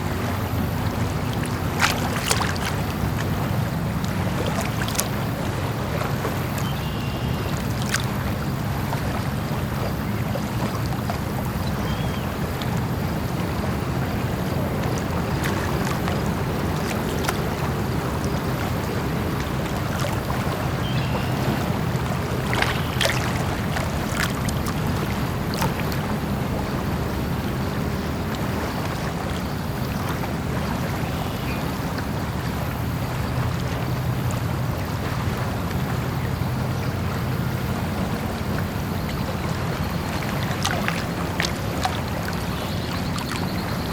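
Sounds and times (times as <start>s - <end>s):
small waves lapping: 0.0s - 43.9s
steady wind: 0.0s - 43.9s
short splashes or knocks: 0.8s - 6.7s, 7.4s - 8.2s, 14.8s - 26.2s.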